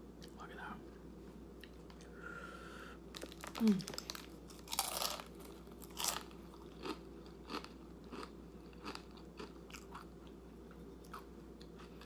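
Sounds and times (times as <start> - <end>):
chewing crunchy chips: 3.1 - 12.0.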